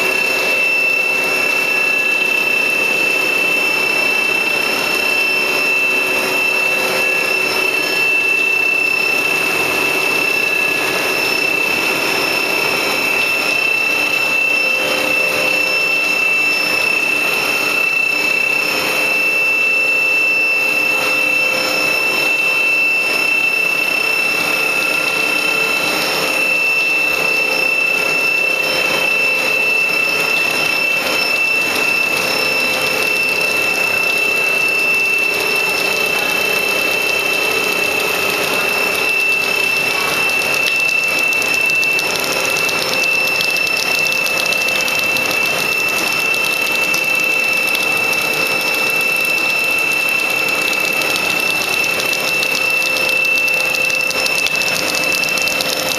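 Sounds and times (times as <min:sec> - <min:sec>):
machine high-pitched whine: 0:00.0 - 0:55.9
mechanical noise: 0:27.6 - 0:55.9.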